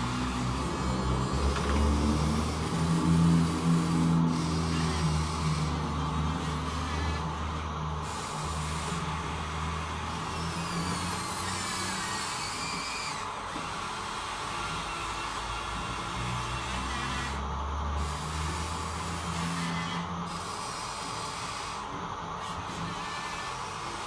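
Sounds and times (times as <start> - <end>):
small electric motors whining: 0.0 - 24.0.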